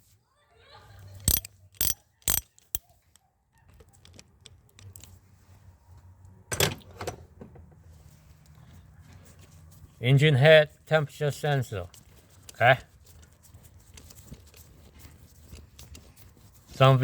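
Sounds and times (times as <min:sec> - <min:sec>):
metallic clinks of hand tools: 0:01.3 - 0:02.8.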